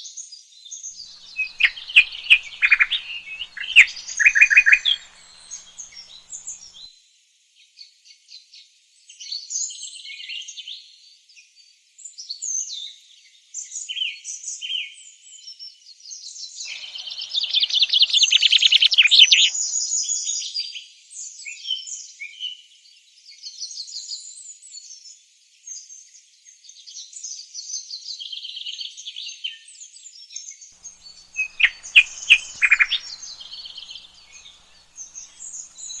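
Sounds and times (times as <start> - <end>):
small birds chirping and singing: 1.2 - 6.9, 16.7 - 19.9, 30.8 - 36.0
bird rapid trill: 1.3 - 6.8, 16.7 - 19.6, 30.8 - 36.0.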